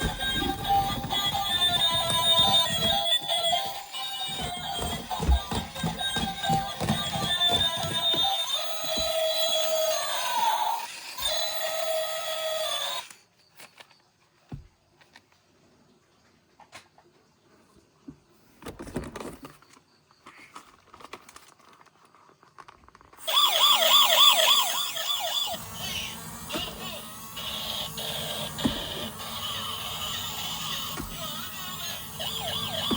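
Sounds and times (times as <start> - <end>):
toy electronic siren: 0.0 - 13.2, 23.2 - 32.9
plastic toy clicks and rustling: 19.1 - 32.9.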